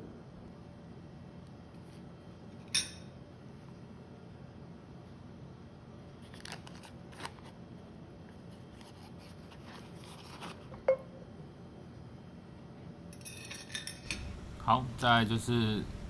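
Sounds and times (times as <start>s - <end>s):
utensils clicking and tapping: 14.0s - 16.0s.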